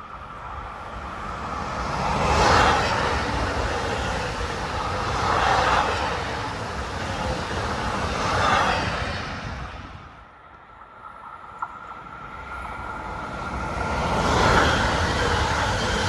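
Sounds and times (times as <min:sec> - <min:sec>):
train passing close by: 0:00.0 - 0:16.0.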